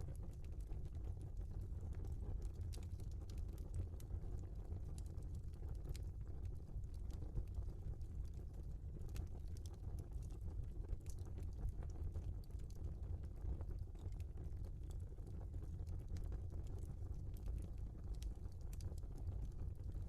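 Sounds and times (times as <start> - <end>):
logs crackling and popping: 0.0 - 20.0
fire flames rumbling: 0.1 - 20.0.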